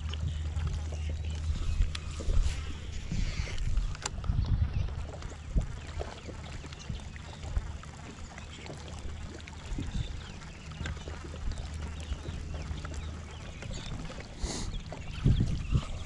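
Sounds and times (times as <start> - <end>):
boat engine low hum: 0.0 - 16.0
light water splashes: 0.0 - 16.0.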